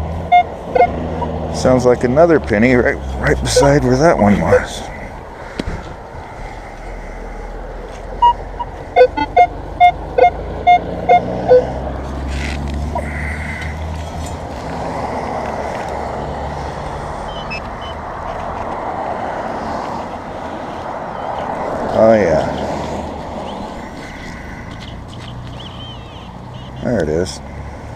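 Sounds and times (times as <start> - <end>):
metal detector beeps: 0.3 - 1.3, 3.5 - 4.7, 8.2 - 11.7, 17.3 - 18.0.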